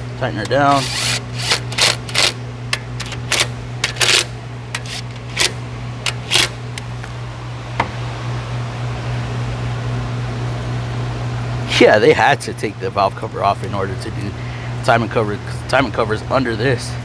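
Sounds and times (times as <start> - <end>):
steady low hum: 0.0 - 17.0
hand tools clicking on metal: 0.4 - 6.9.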